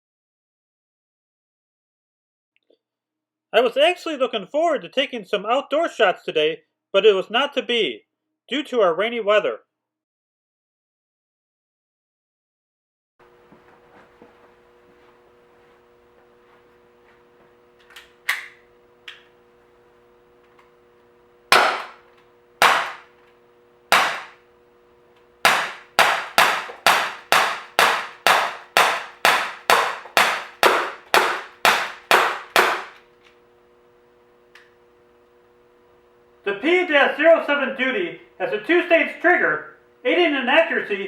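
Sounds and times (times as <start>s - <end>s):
air pistol shots: 21.5s - 22.0s, 22.6s - 23.1s, 23.9s - 24.4s, 25.4s - 33.0s.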